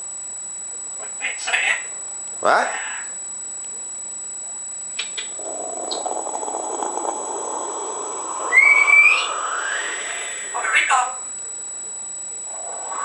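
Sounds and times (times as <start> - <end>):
parrot raspy chattering: 5.0 - 11.1
parrot high chirp: 8.5 - 11.0.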